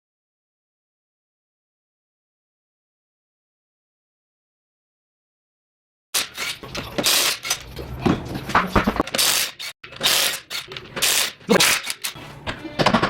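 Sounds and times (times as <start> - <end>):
metal tools clanking and rattling: 6.2 - 13.0.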